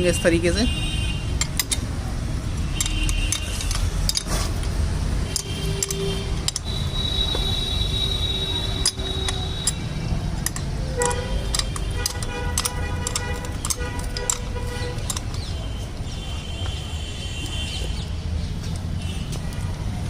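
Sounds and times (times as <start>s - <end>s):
metallic clinks of hand tools: 5.3s - 15.6s.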